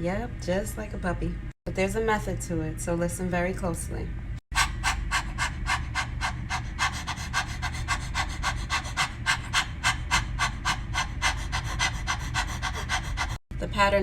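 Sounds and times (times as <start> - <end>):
person panting through the mouth: 4.5 - 13.5.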